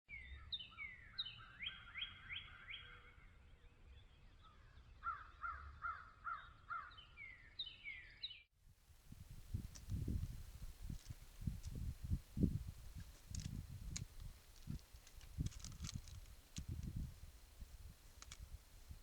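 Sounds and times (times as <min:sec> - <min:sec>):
steady hiss: 0:08.9 - 0:19.0.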